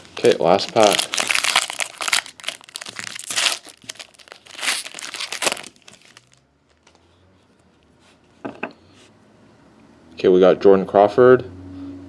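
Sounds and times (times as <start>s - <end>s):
foil wrapper crinkling and tearing: 0.0s - 6.9s.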